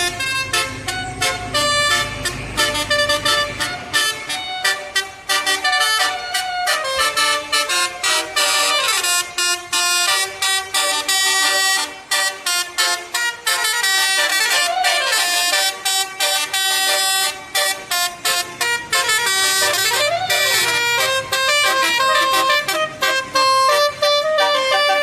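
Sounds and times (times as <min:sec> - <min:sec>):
multi-tone air horn tune: 0:00.0 - 0:25.0.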